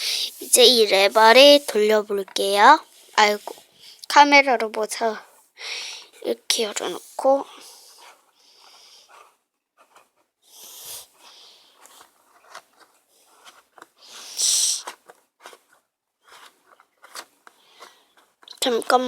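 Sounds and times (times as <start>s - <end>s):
short breathy rush: 0.0s - 0.6s
rustling: 5.2s - 19.0s.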